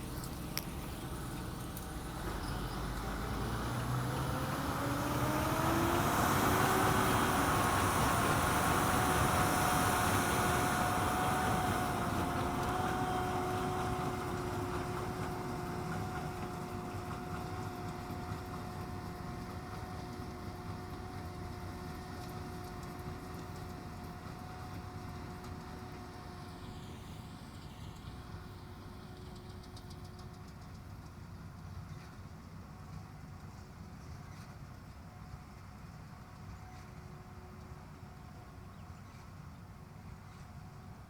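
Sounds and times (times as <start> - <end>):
tractor engine revving: 0.0 - 19.2.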